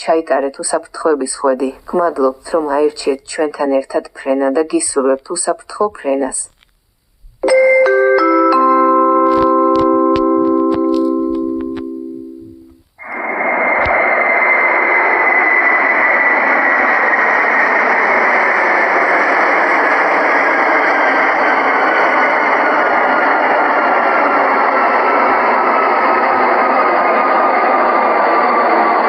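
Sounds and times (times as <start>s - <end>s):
cabin chime: 7.4s - 12.8s
faint falling whine: 8.9s - 29.0s
jet airliner rushing noise: 13.0s - 29.0s.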